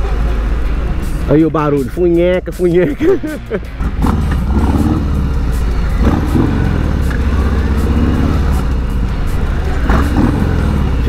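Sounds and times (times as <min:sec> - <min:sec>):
motorcycle engine at low speed: 0:03.7 - 0:11.0.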